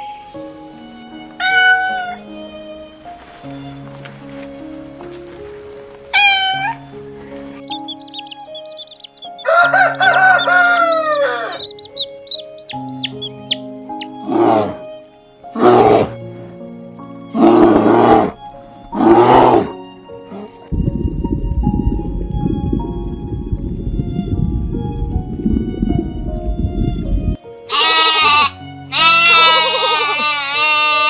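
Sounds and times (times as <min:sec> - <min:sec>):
high peeping chirps: 0:00.0 - 0:01.1, 0:07.6 - 0:14.2
background music: 0:00.0 - 0:31.0
rooster crowing: 0:09.4 - 0:11.9.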